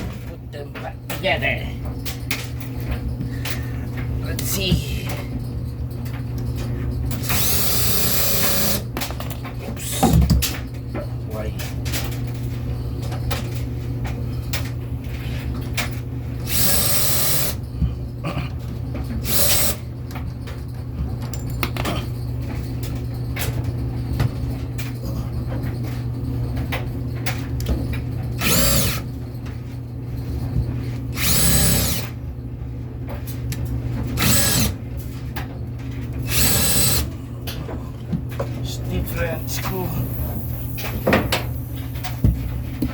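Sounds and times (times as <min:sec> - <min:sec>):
steady low hum: 0:00.0 - 0:42.9
power drill driving screws: 0:07.2 - 0:08.8, 0:16.5 - 0:17.6, 0:19.2 - 0:19.8, 0:28.4 - 0:29.0, 0:31.2 - 0:32.1, 0:34.2 - 0:34.8, 0:36.2 - 0:37.1.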